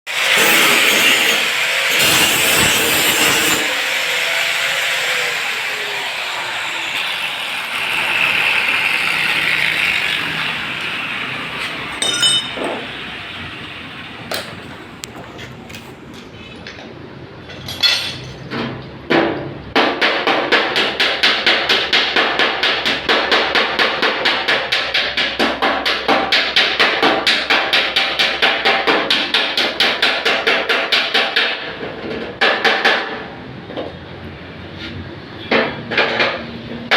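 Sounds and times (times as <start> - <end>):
workshop noise: 0.1 - 36.9
hammer beating sheet metal: 0.3 - 3.8, 19.8 - 31.7.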